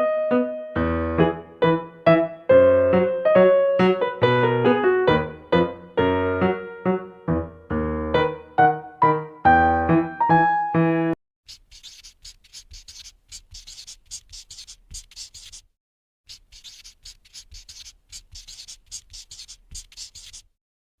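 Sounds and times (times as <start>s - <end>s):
oil pastel scraping on paper: 11.5s - 20.6s.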